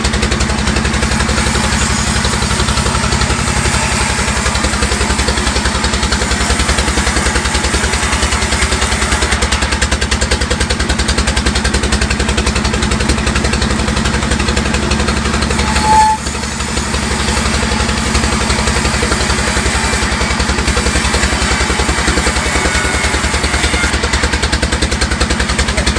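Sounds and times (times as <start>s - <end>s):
sawmill engine running: 0.0s - 25.9s
high squeal: 0.4s - 10.3s, 14.6s - 24.8s.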